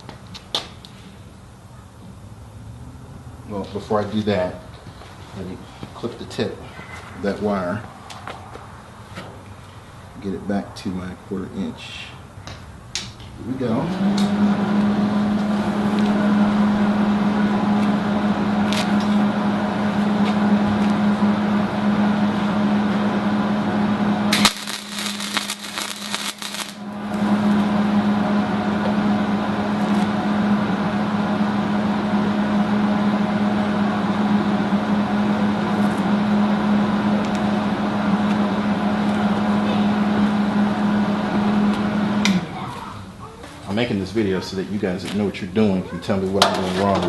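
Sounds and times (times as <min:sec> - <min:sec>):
welder humming: 0:13.4 - 0:42.6
welding arc crackling: 0:24.2 - 0:30.2.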